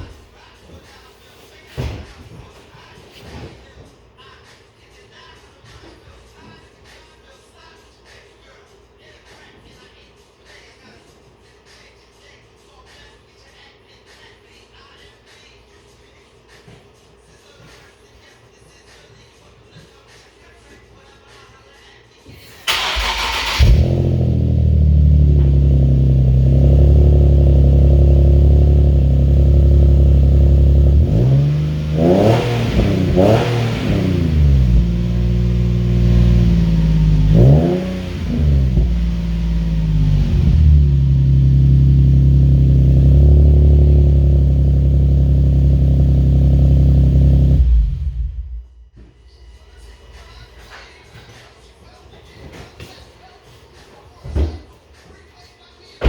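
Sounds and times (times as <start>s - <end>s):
starter motor cranking: 22.7s - 24.1s
car engine idling and revving: 22.7s - 48.8s.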